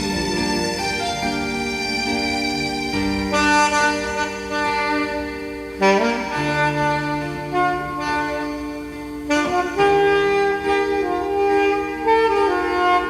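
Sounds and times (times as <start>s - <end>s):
alto saxophone melody: 0.0s - 13.0s
electronic keyboard accompaniment: 0.0s - 13.0s.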